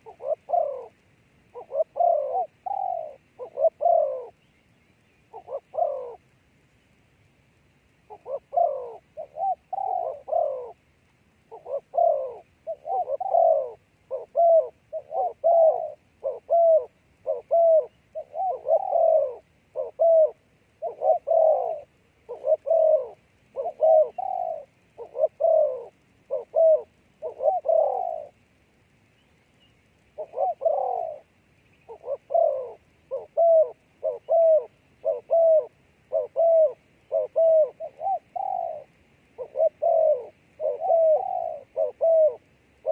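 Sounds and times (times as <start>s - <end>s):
dove cooing: 0.0s - 6.3s, 8.0s - 29.0s, 29.9s - 42.9s.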